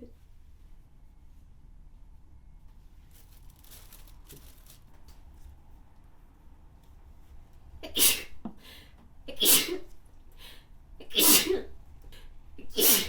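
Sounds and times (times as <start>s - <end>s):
person sneezing: 7.8s - 8.4s, 9.3s - 9.8s, 11.1s - 11.7s, 12.7s - 13.0s.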